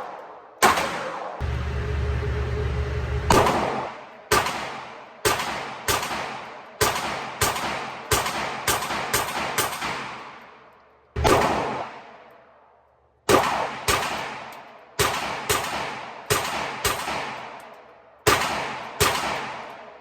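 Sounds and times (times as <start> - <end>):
pistol shots echoing: 3.3 - 10.4, 11.2 - 12.2, 13.3 - 17.5, 18.3 - 19.9.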